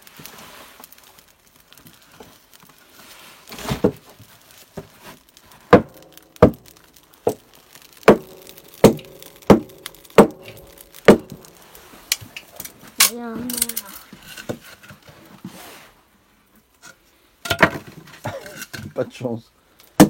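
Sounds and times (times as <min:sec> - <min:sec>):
axe chopping kindling: 0:05.7 - 0:11.6.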